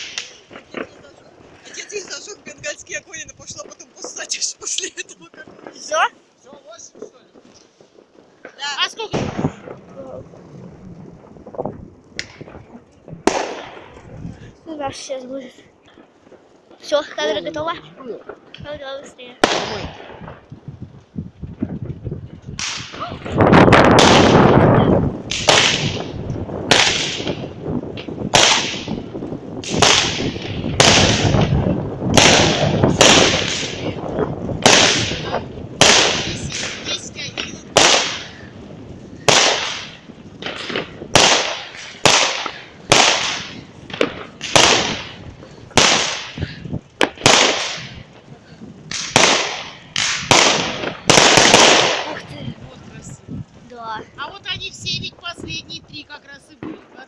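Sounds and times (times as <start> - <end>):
firework bangs with echo: 0.0 - 14.6, 18.2 - 20.7, 21.5 - 53.4, 54.9 - 57.0
firework launch rushing: 0.0 - 15.1, 19.3 - 20.8, 21.4 - 53.7.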